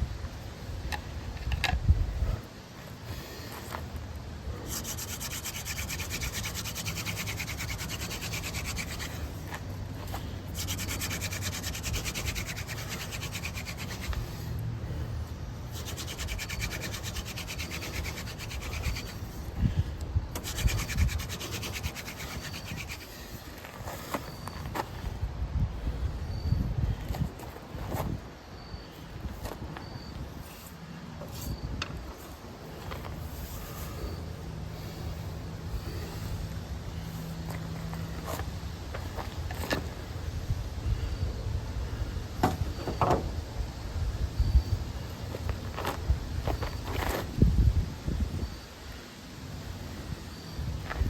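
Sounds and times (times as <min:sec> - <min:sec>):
wooden hand drill rubbing: 0:04.7 - 0:14.6, 0:15.7 - 0:19.6, 0:20.3 - 0:24.6.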